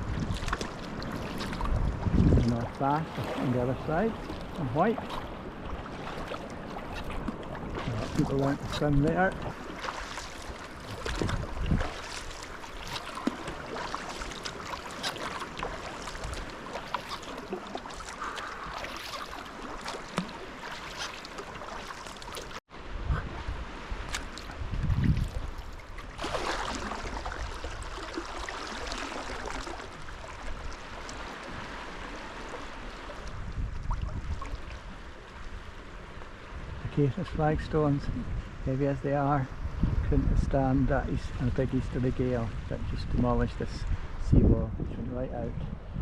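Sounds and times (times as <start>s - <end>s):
paddle strokes splashing: 0.0s - 22.6s, 23.2s - 36.4s
water gurgling and lapping: 0.0s - 46.0s.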